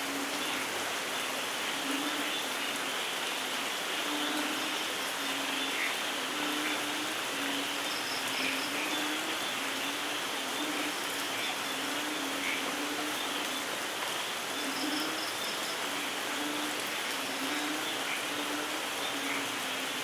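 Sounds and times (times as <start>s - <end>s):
steady rain falling: 0.0s - 20.0s.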